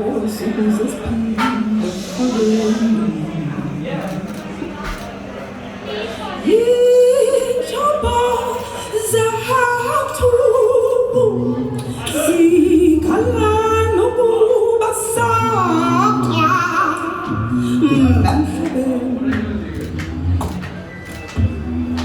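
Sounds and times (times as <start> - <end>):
woman singing a cappella: 0.0 - 3.1, 6.4 - 19.8
beatboxed percussion: 1.0 - 3.2, 15.4 - 22.0.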